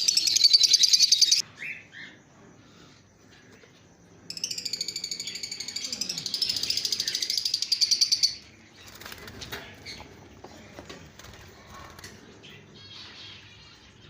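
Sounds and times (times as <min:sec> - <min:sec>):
lovebirds chattering: 0:00.0 - 0:02.4.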